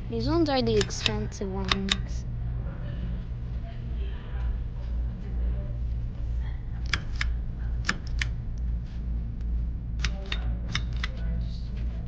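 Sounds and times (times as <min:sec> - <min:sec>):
steady low hum: 0:00.0 - 0:12.0
pull-chain switch clicking: 0:00.6 - 0:02.2, 0:10.0 - 0:11.2.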